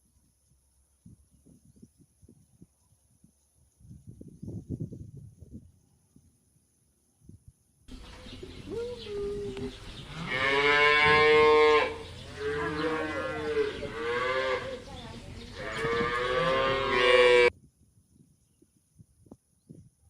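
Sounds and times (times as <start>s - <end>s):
cow mooing: 10.1s - 14.9s, 15.6s - 17.5s.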